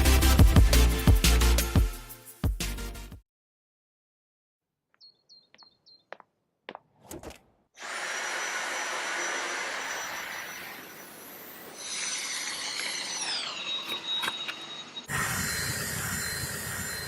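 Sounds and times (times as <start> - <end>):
vacuum motor whining: 7.8 - 17.0.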